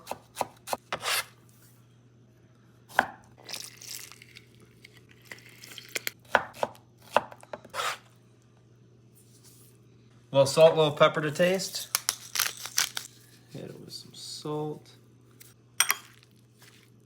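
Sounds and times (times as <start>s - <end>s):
knife chopping on cutting board: 0.0s - 1.3s, 2.9s - 3.2s, 6.3s - 8.0s.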